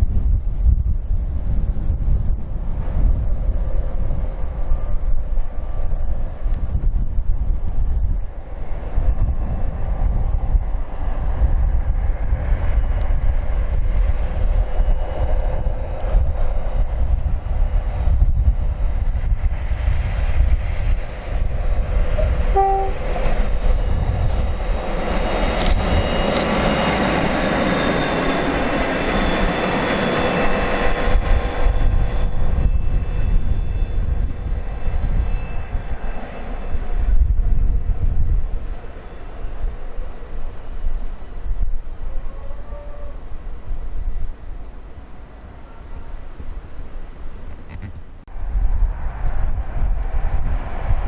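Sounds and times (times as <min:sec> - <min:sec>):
train passing at speed: 0:00.0 - 0:51.0
wind buffeting microphone: 0:00.0 - 0:51.0
two-note train horn: 0:22.2 - 0:23.4.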